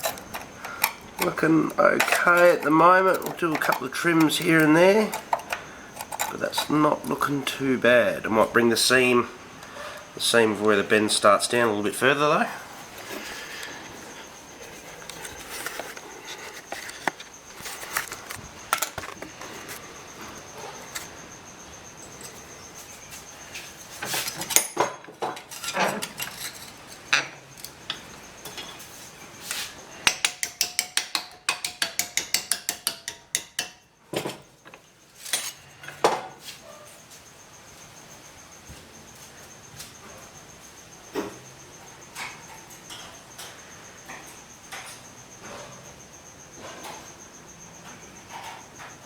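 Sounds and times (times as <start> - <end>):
metallic clicks and clinks: 0.0 - 7.3.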